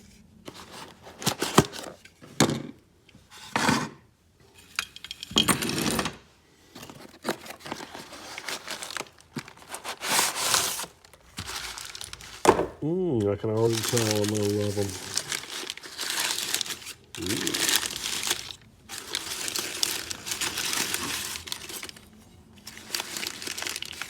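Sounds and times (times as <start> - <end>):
packaging torn and crinkled: 7.2 - 12.6, 13.5 - 24.0.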